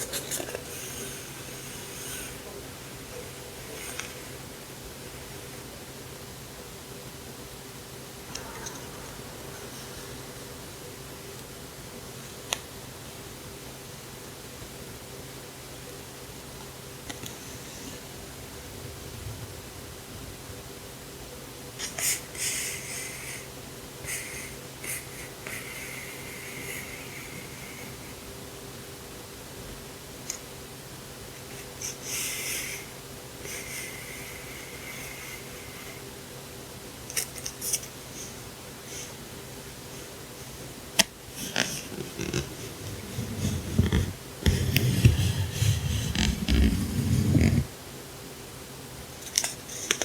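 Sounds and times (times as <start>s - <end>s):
packaging crinkling and rubbing: 41.4s - 47.7s.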